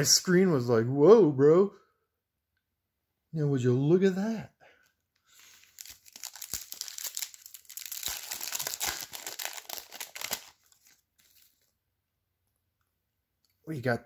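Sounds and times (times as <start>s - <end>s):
foil wrapper crinkling and tearing: 5.3s - 11.7s.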